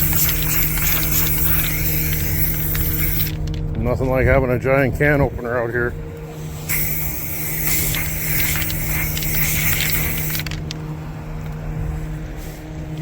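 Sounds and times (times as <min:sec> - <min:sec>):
spray can hissing: 0:00.0 - 0:03.4, 0:06.5 - 0:10.6.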